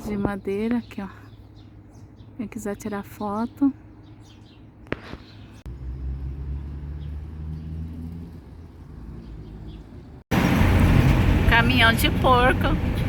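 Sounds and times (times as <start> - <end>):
road and wind noise: 0.0 - 2.4, 3.0 - 13.0
car engine drone: 5.6 - 13.0.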